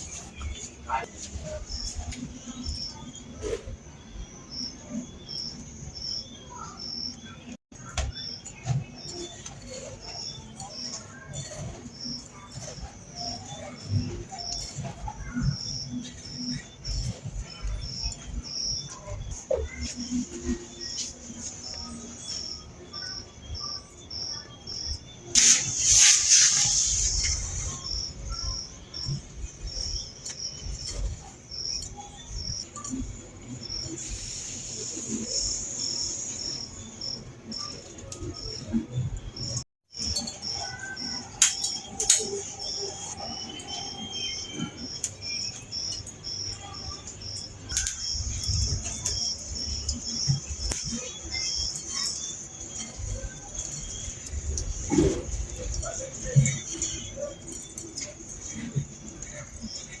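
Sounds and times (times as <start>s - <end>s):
cricket chirping: 0.2s - 7.6s, 8.2s - 60.0s
loud hissing burst: 25.3s - 28.2s, 33.9s - 36.6s.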